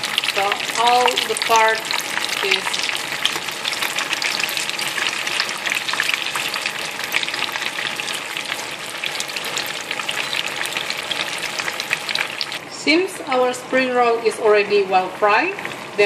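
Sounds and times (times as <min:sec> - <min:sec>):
deep-frying sizzle and crackling: 0:00.0 - 0:16.0.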